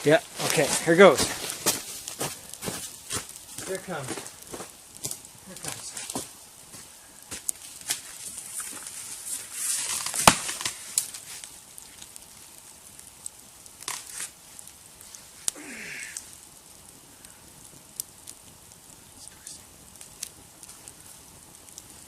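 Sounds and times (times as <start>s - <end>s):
tree cracking and falling: 7.4s - 16.6s
branches snapping: 9.8s - 12.2s, 13.8s - 14.4s.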